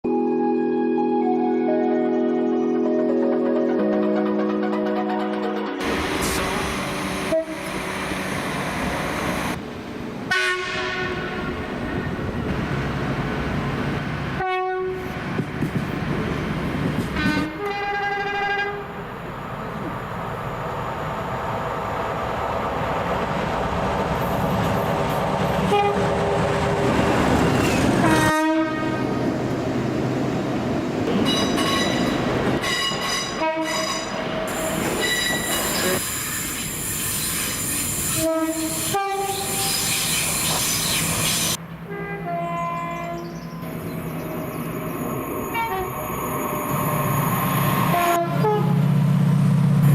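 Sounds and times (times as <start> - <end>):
train rumbling on rails: 3.8 - 49.9
train horn blasts: 7.1 - 7.9, 10.3 - 11.5, 14.4 - 15.3, 17.2 - 18.9, 25.7 - 26.1, 28.0 - 29.2, 32.6 - 34.2, 38.0 - 39.8, 41.9 - 43.4, 45.5 - 46.0, 47.8 - 48.8.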